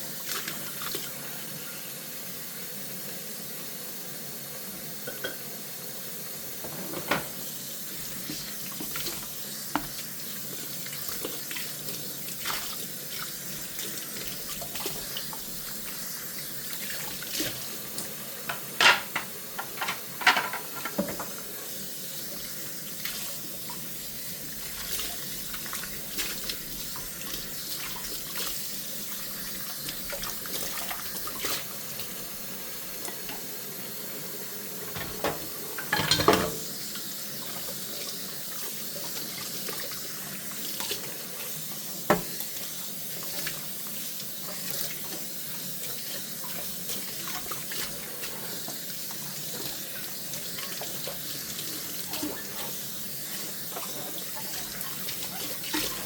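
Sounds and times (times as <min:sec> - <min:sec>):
dishes clinking: 0:05.1 - 0:05.5, 0:06.6 - 0:07.5, 0:18.5 - 0:21.4, 0:34.8 - 0:36.7
tap running into sink: 0:06.6 - 0:10.1, 0:18.0 - 0:21.5, 0:34.8 - 0:36.8, 0:42.0 - 0:42.5.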